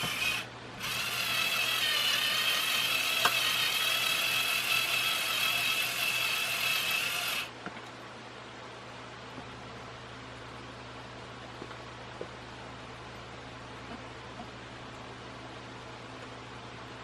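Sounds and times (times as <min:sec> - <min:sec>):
electric power drill whining: 0:00.0 - 0:07.5.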